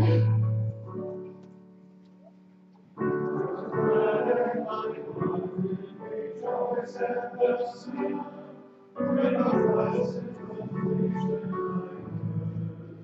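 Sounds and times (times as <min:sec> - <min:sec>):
piano accompaniment: 0:00.0 - 0:13.0
congregation singing a hymn: 0:03.0 - 0:13.0.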